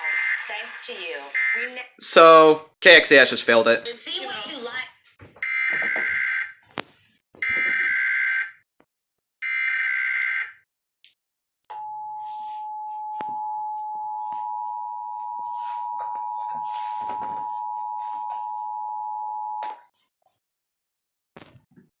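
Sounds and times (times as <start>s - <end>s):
two-tone attention signal: 11.7s - 19.7s.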